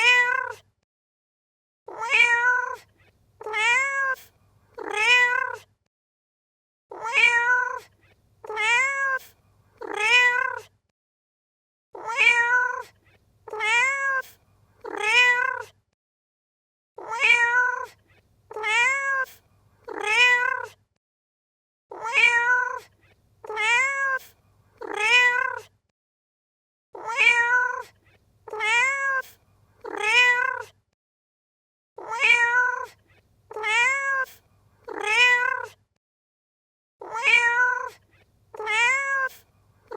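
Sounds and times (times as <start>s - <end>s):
cat meowing: 0.0s - 0.6s, 1.9s - 5.7s, 6.9s - 10.7s, 12.0s - 12.9s, 13.5s - 15.7s, 17.0s - 20.8s, 21.9s - 25.7s, 27.0s - 30.8s, 32.0s - 35.8s, 37.0s - 39.9s.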